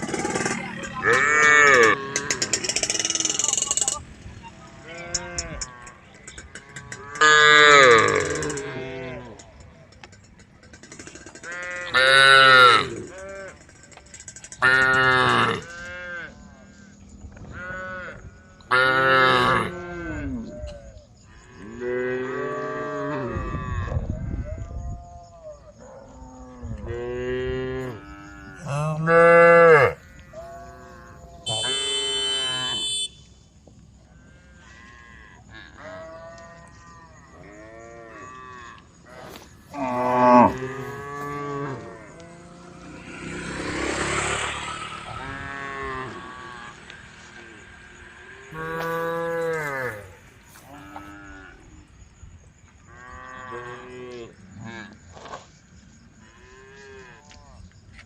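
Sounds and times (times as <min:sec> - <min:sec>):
cows mooing: 0:00.0 - 0:04.0, 0:04.8 - 0:09.4, 0:11.4 - 0:13.6, 0:14.6 - 0:16.4, 0:17.5 - 0:20.5, 0:26.2 - 0:33.1, 0:34.2 - 0:51.8.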